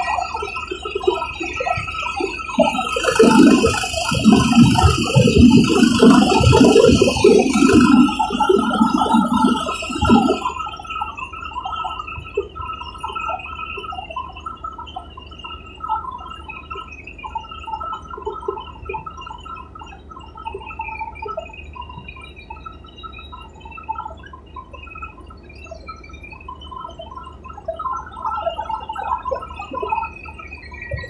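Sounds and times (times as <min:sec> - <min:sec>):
helicopter cabin drone: 0:00.0 - 0:10.9
warbling garbled tones: 0:00.0 - 0:11.0.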